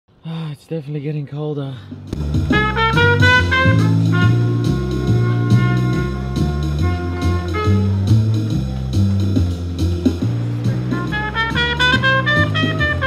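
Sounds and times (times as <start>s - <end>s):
drums: 1.9s - 13.0s
bass line: 2.0s - 13.0s
brass horns: 2.2s - 8.6s, 10.2s - 13.0s.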